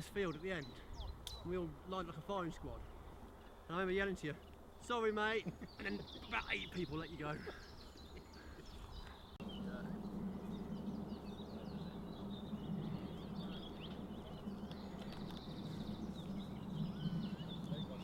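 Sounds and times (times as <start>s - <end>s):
small birds chirping: 0.0s - 18.0s
low background rumble: 9.2s - 18.0s.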